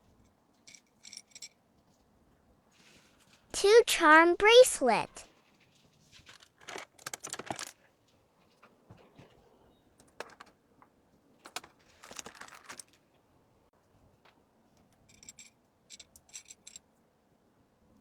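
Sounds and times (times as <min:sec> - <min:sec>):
packaging clicks and rustles: 0:06.1 - 0:07.9, 0:10.0 - 0:10.6, 0:11.4 - 0:13.1.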